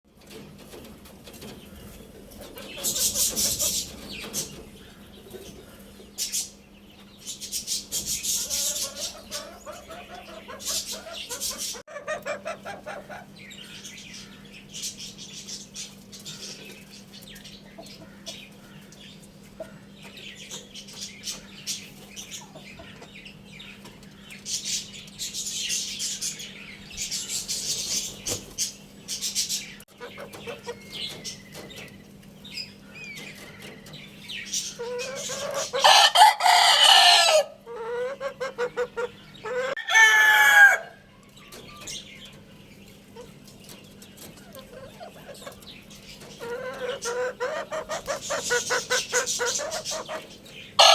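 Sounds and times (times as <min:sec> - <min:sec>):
chickens clucking: 0:00.1 - 0:50.9
rooster crowing: 0:35.8 - 0:37.6, 0:39.6 - 0:41.1.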